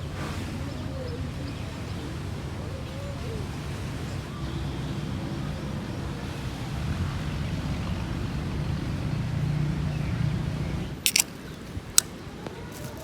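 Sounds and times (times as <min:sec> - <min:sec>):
sharp clicks: 0:11.1 - 0:11.4.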